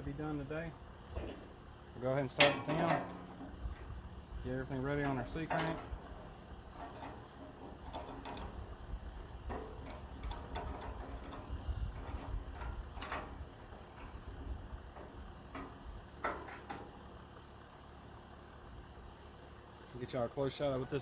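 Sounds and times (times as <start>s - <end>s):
metallic clicks and knocks: 2.3s - 3.6s, 4.9s - 8.7s, 9.4s - 17.0s.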